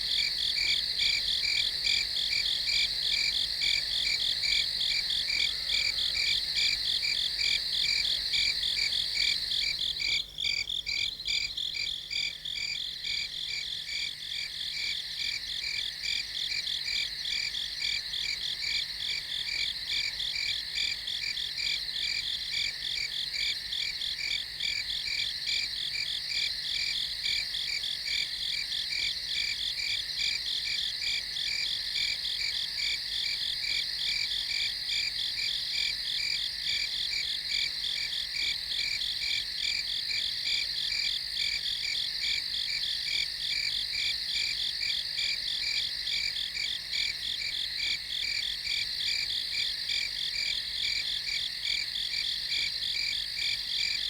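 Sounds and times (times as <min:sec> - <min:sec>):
crickets chirping: 0:00.0 - 0:54.0.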